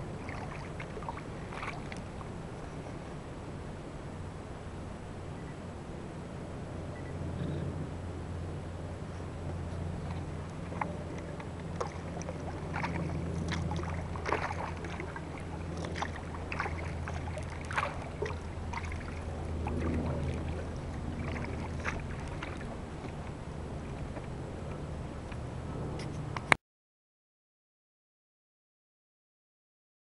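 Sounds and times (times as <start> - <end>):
paddle splashing in water: 0.0 - 3.0, 9.5 - 24.9
steady low hum: 0.0 - 26.6.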